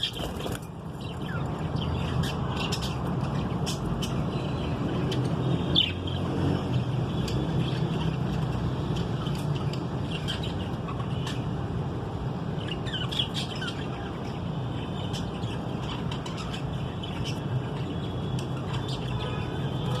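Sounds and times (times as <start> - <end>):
budgerigars chirping: 0.0 - 6.3, 12.6 - 20.0.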